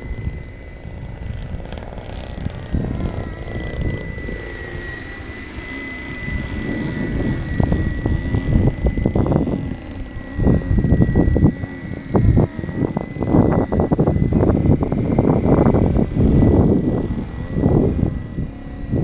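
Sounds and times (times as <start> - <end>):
model helicopter rotor whine: 0.0 - 19.0
wind buffeting microphone: 0.0 - 19.0.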